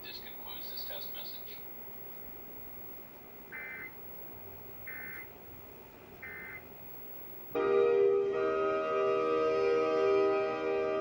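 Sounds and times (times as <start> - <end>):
warbling digital data tones: 4.9 - 5.3, 6.2 - 6.7.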